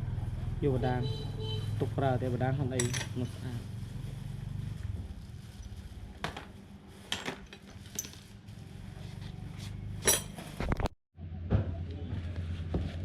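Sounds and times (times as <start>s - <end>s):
metal parts clinking: 2.7s - 3.2s, 7.1s - 8.3s, 10.0s - 10.5s.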